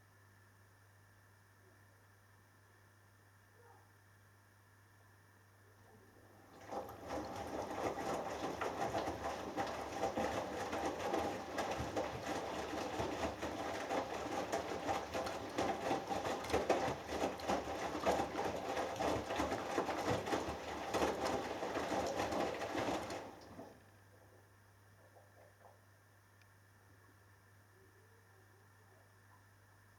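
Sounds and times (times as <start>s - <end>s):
washing machine drum tumbling: 6.4s - 23.8s
laundry knocking in drum: 6.6s - 23.7s.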